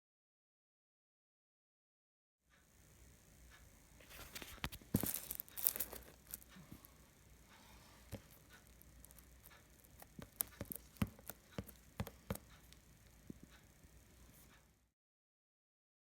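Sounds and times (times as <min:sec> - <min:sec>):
faint low hum: 0:02.5 - 0:14.9.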